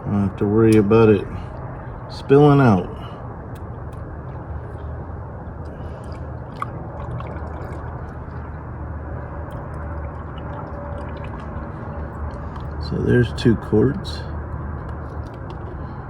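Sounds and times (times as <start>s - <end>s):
oil pouring through a funnel: 5.6s - 13.4s.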